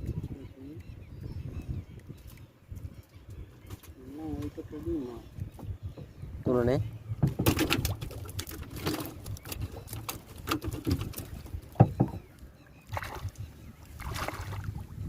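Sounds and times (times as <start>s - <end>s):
water splashes: 7.4s - 15.0s.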